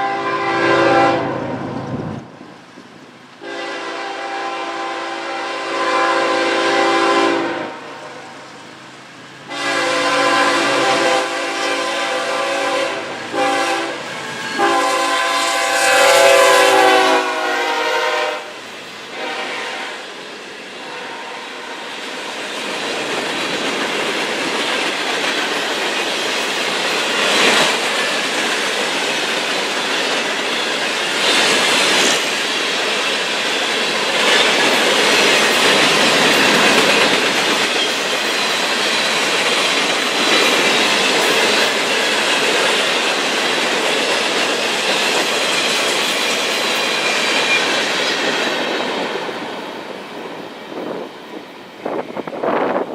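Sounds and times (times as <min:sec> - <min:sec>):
locomotive air horn: 0:00.0 - 0:01.6, 0:03.4 - 0:08.4, 0:09.5 - 0:20.0, 0:20.8 - 0:21.9
train wheels on rails: 0:00.0 - 0:52.9
clickety-clack over rail joints: 0:21.9 - 0:52.9.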